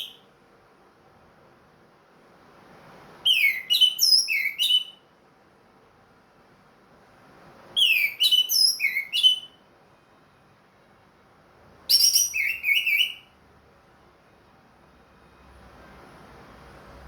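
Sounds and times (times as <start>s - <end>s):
thrush singing whistled notes: 3.2s - 5.0s, 7.8s - 9.6s, 11.9s - 13.4s.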